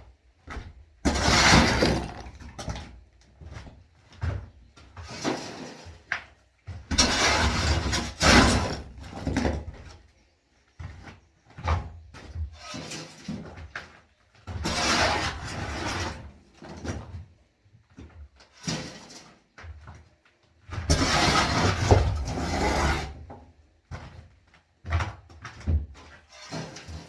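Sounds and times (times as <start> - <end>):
rushing scraping noise: 1.1 - 2.4, 20.9 - 23.2.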